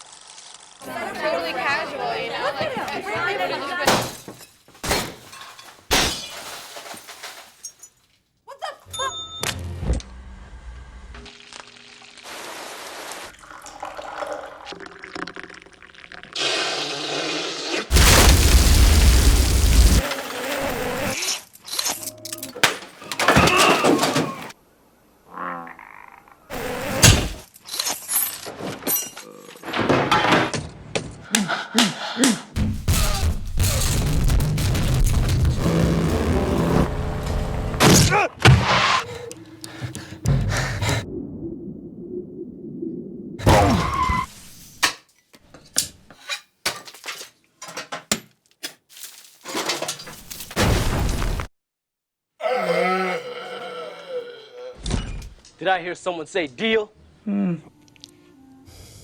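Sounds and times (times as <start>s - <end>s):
dishes and cutlery clinking: 4.0s - 5.9s
frog croaking: 25.3s - 26.5s.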